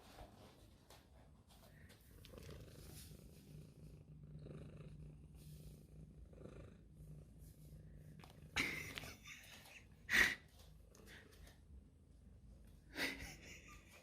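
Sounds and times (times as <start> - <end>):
cat purring: 1.6 - 9.5.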